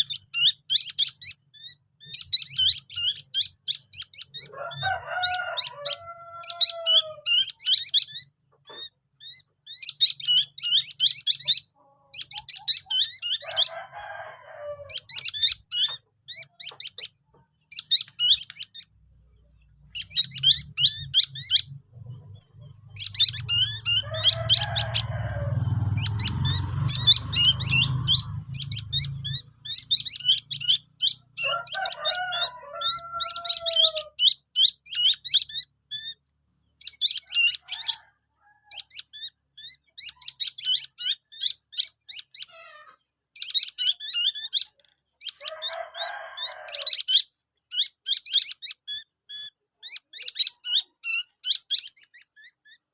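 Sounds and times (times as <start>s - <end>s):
chicks chirping: 0.0s - 52.9s
rooster crowing: 4.4s - 7.6s, 12.9s - 15.3s, 23.0s - 30.1s, 31.0s - 34.2s, 37.3s - 39.0s, 45.3s - 47.1s.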